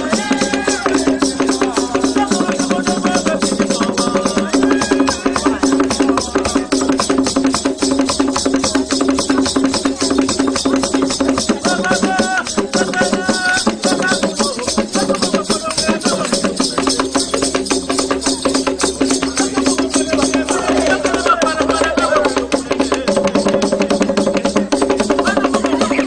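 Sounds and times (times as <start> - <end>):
voices singing: 0.0 - 7.2, 11.4 - 17.5, 18.1 - 23.7, 25.0 - 26.0
drums: 0.0 - 26.0
shaken rattles: 0.0 - 26.0.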